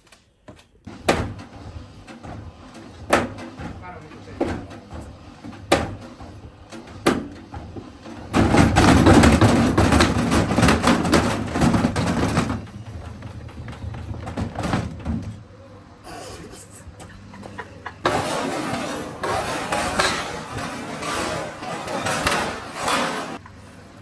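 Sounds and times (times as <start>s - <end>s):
washing machine clattering: 0.8s - 15.7s, 17.0s - 23.4s
washing machine knocking: 0.9s - 15.5s.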